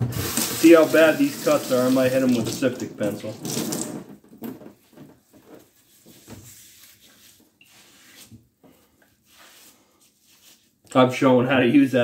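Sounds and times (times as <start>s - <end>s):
light knocks and rustles: 4.1s - 7.5s.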